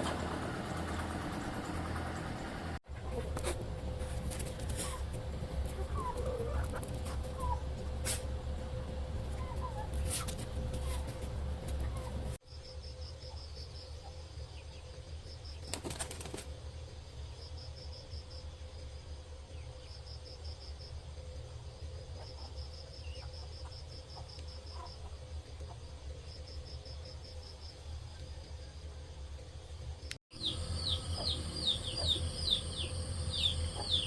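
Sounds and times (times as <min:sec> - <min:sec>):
steady low hum: 0:00.0 - 0:34.0
insects chirping: 0:12.4 - 0:34.0.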